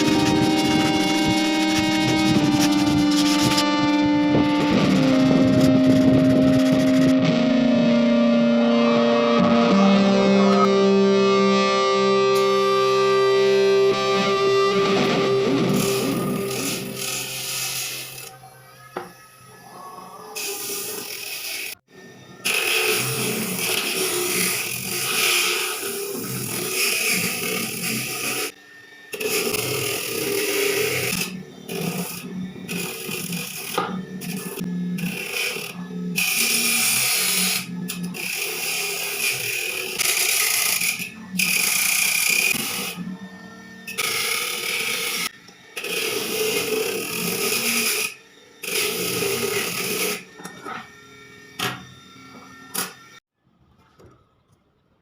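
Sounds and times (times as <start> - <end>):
abrasive scraping on steel: 0.0 - 10.7, 12.1 - 21.8
power tool grinding steel: 0.0 - 53.2.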